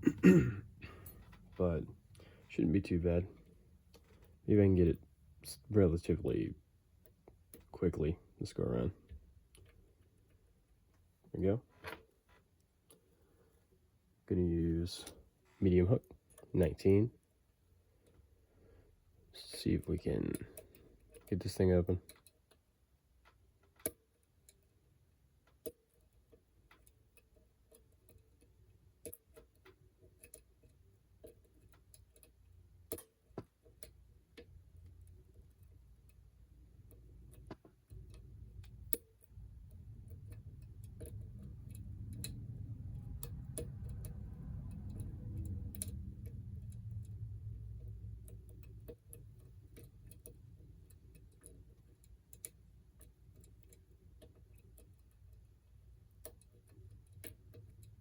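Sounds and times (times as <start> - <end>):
low rumble: 38.1 - 50.0.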